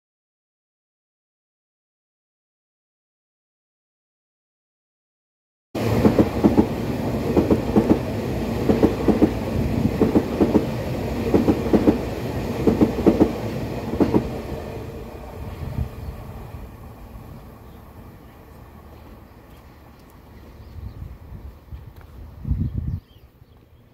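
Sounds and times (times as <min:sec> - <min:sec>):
train wheels clacking over rail joints: 0:05.8 - 0:14.3
train running noise: 0:05.8 - 0:22.5.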